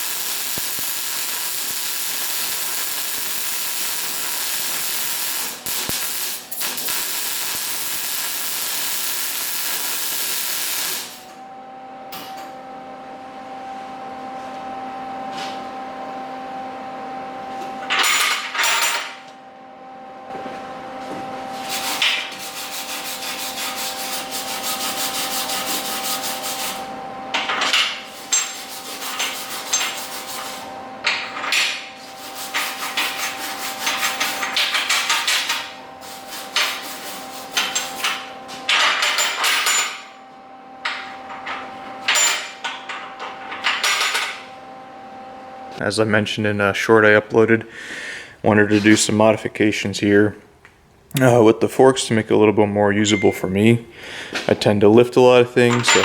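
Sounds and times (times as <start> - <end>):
welding crackle: 0.0 - 11.3, 28.0 - 30.7, 32.0 - 38.3
steady electrical hum: 0.0 - 56.0.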